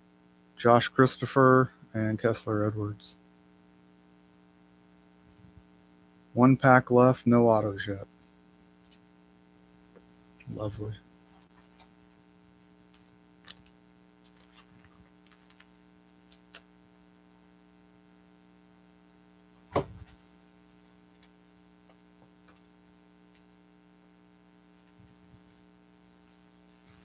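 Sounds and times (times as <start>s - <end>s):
electrical hum: 0.0s - 27.0s
cards being handled: 13.0s - 15.7s
sharp knock: 19.7s - 20.1s.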